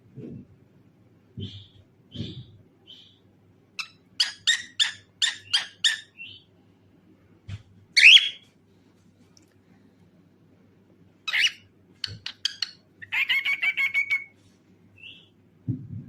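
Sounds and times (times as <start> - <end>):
cockatiel chirping: 3.8 - 6.4, 8.0 - 8.4, 11.3 - 14.3.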